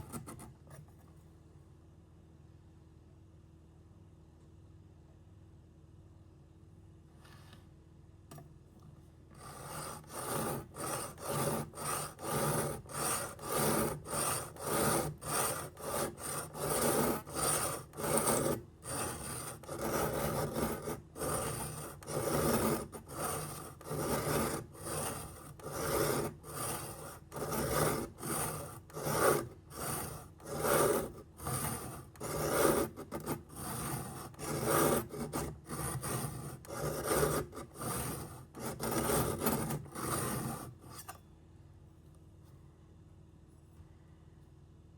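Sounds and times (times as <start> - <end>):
knife rasping on sharpening stone: 9.4 - 41.2.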